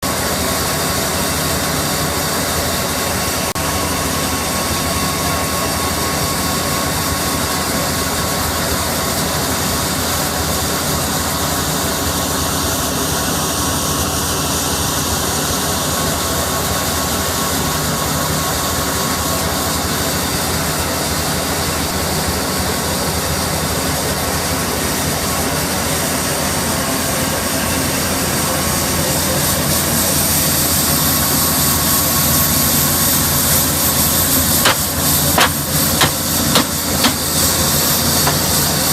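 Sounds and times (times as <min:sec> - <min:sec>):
blower air rushing with high tone: 0:23.8 - 0:38.9.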